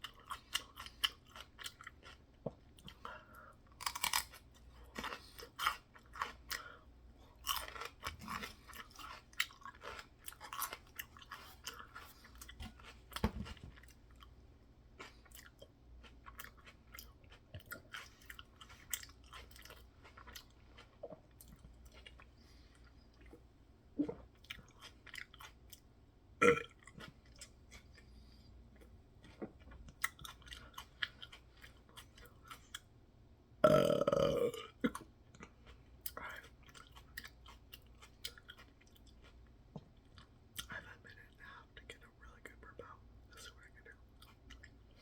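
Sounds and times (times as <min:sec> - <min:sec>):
open-mouth chewing: 0:15.0 - 0:32.9.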